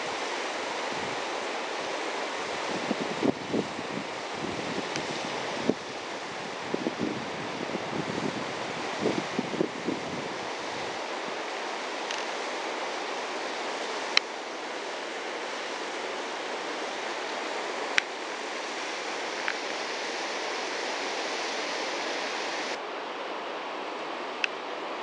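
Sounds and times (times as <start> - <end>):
waterfall rushing: 0.0 - 25.0.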